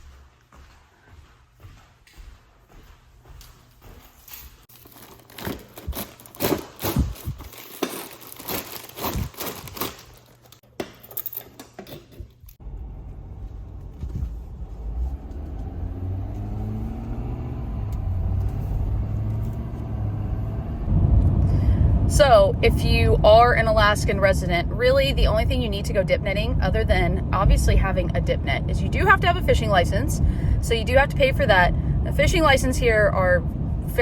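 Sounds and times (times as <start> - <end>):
truck engine rumbling: 12.4 - 34.0.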